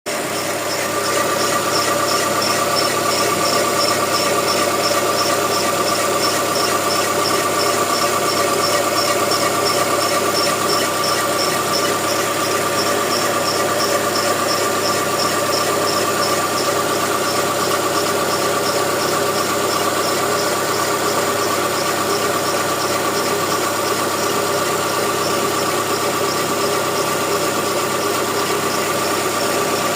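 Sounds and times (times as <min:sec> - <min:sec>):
high-pitched squeal: 0:00.1 - 0:17.4
car engine idling: 0:00.1 - 0:29.9.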